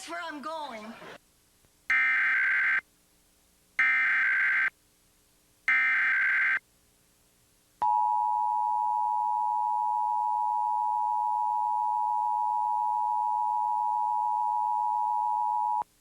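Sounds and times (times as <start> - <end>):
two-tone alarm: 3.8 - 4.7, 5.7 - 6.6, 7.8 - 15.8.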